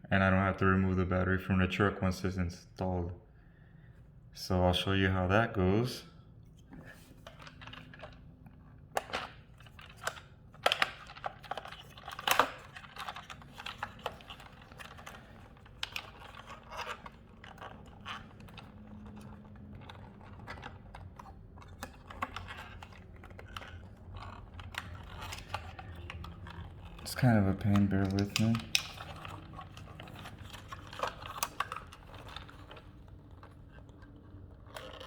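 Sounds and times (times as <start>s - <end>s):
plastic clicks and knocks: 7.2s - 35.0s.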